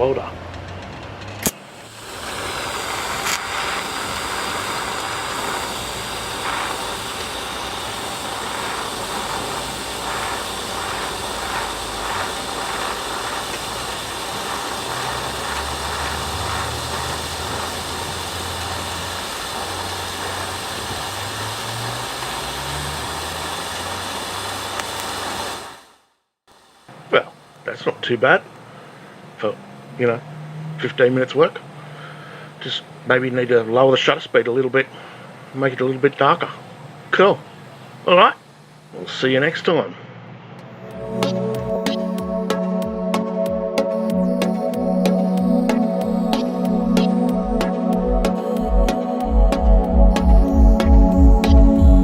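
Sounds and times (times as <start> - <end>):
welding arc crackling: 0.0 - 28.4, 40.6 - 52.0
welder click: 1.3 - 25.8
low hum: 40.1 - 52.0.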